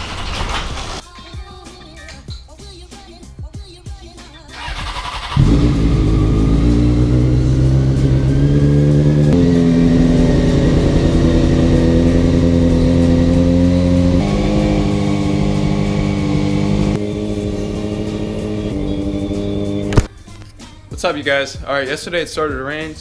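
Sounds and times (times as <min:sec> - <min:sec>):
vehicle engine running: 0:04.6 - 0:20.2.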